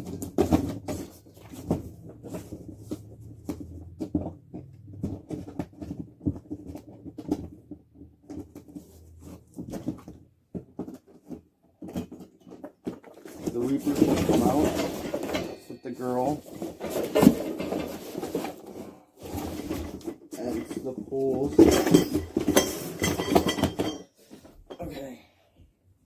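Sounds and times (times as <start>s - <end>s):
cardboard box rustling and scraping: 0.0s - 15.5s, 16.1s - 20.5s.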